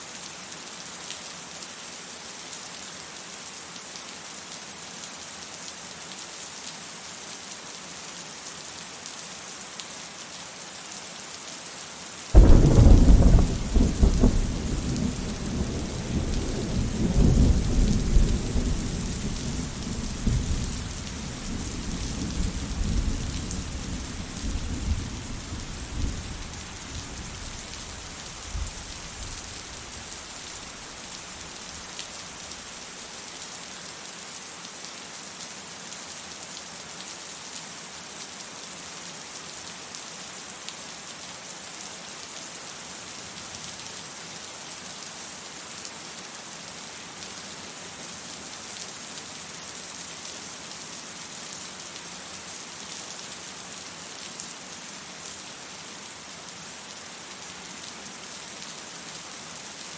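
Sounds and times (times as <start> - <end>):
thunder cracking and rumbling: 12.4 - 27.6
rain hissing: 12.4 - 32.8.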